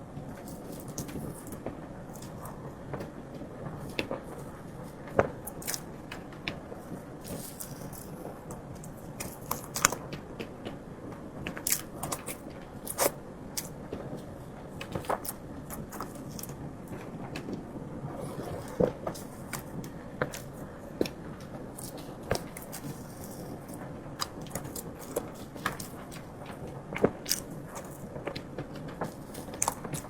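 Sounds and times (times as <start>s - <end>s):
wet chewing mouth sounds: 5.3s - 5.9s, 11.6s - 16.6s, 18.2s - 26.4s, 27.0s - 28.1s, 29.0s - 30.0s.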